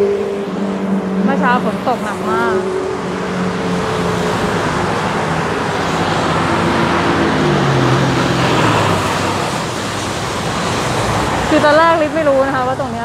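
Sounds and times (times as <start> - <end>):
vehicle engine passing close: 0.0 - 13.0
tyres hissing on wet road: 2.9 - 12.9.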